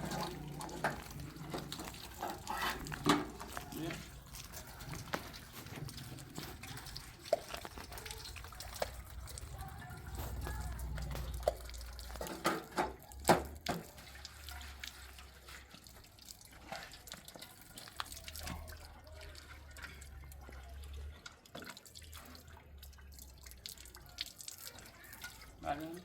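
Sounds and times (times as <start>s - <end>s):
water dripping and trickling: 0.0s - 26.0s.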